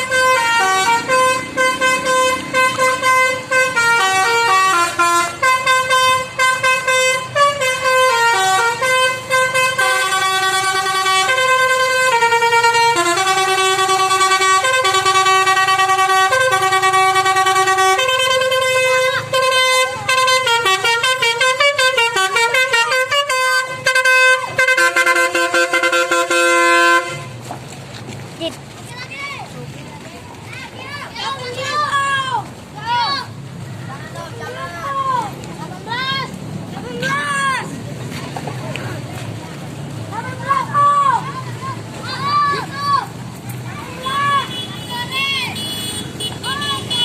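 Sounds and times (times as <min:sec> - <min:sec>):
bus horn playing a tune: 0:00.0 - 0:27.4, 0:44.0 - 0:47.0.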